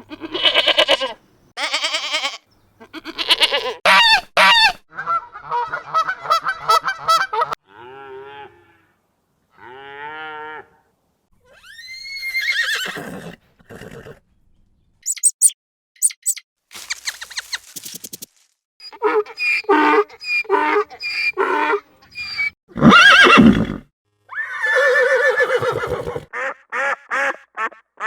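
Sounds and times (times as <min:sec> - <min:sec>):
short high chirps: 0:15.0 - 0:18.2
animal calls: 0:18.8 - 0:23.5.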